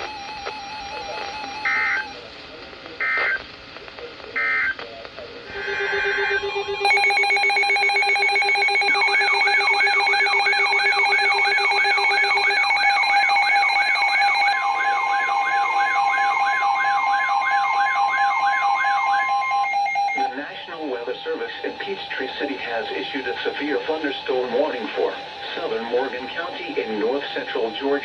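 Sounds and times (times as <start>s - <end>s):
steady electronic alert tones: 5.6s - 20.3s.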